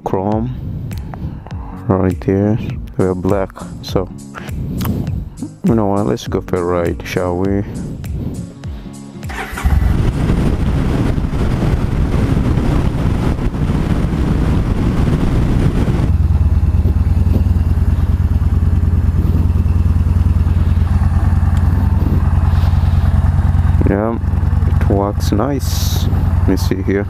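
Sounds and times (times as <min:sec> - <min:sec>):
wind and road noise: 0:00.0 - 0:01.8, 0:02.6 - 0:05.6, 0:07.6 - 0:08.6, 0:09.3 - 0:27.0
motorcycle engine running: 0:09.3 - 0:27.0.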